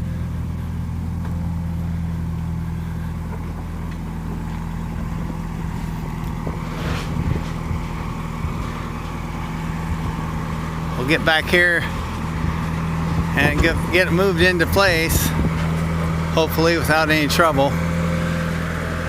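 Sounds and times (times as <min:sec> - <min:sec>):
vehicle engine idling: 0:00.0 - 0:19.0.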